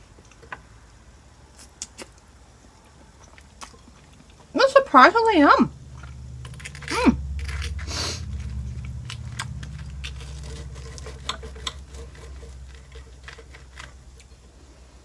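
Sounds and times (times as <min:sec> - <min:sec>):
steady low hum: 0:00.0 - 0:15.0
chewing food: 0:01.5 - 0:04.6, 0:05.8 - 0:14.6.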